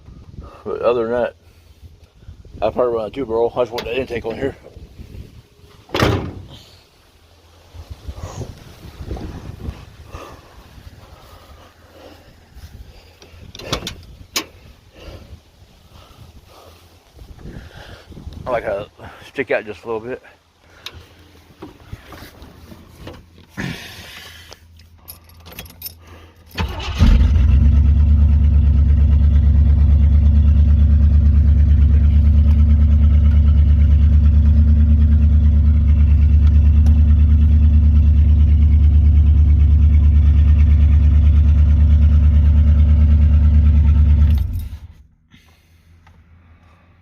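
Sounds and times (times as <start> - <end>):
car engine idling: 9.1 - 17.1, 26.5 - 47.0
car engine starting: 20.8 - 47.0.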